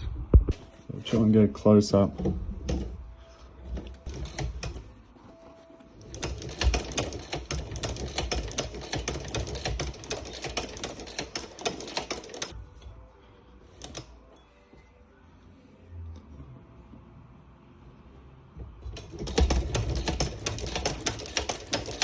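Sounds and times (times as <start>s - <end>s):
sewing machine clicking: 3.8s - 4.8s, 6.0s - 12.6s, 18.9s - 22.0s.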